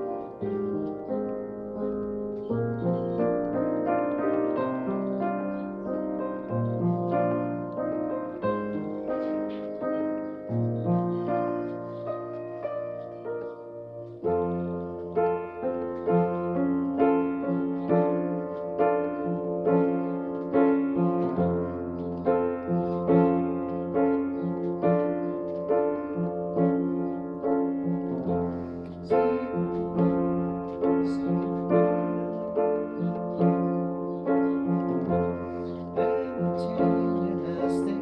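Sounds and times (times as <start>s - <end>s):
solo piano playing: 0.0s - 38.0s.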